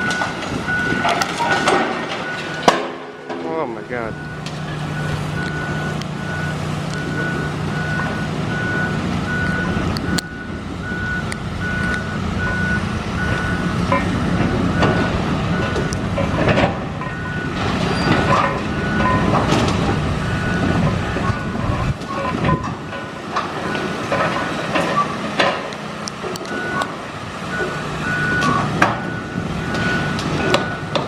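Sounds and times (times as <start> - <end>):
demolition debris crashing: 0.0 - 5.0, 13.2 - 31.0
backup alarm beeping: 0.0 - 16.0, 26.4 - 31.0
diesel engine rumbling: 0.0 - 31.0.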